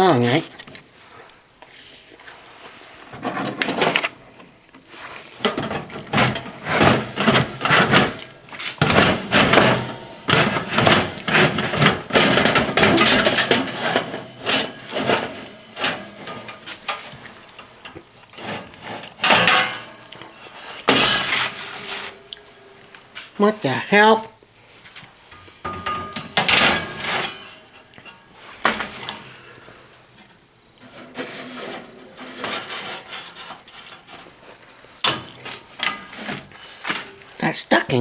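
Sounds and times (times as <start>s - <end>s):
hard objects clattering and knocking: 3.1s - 4.2s, 5.2s - 23.4s, 25.3s - 34.4s
rustling: 4.8s - 37.5s.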